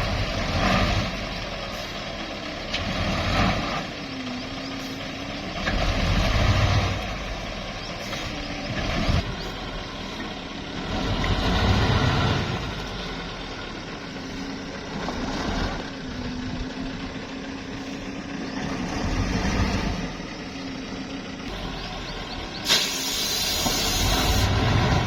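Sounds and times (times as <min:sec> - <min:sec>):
diesel truck engine humming: 0:00.0 - 0:25.0
sharp burst of hiss: 0:22.6 - 0:24.5.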